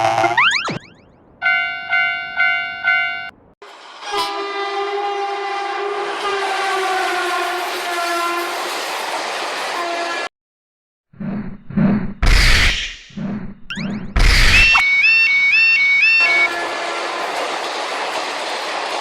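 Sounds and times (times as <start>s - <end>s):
passing train noise: 1.4s - 10.3s, 15.0s - 19.0s
train horn chord: 4.0s - 8.6s, 16.2s - 17.4s.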